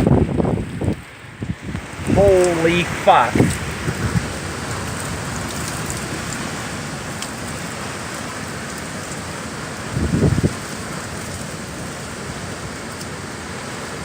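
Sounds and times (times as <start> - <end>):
heavy rain and wind: 0.0 - 14.0.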